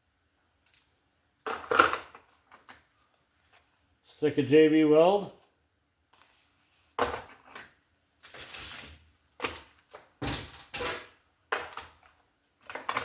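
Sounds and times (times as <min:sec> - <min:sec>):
items rustling and clattering in toolbox: 0:06.2 - 0:13.0.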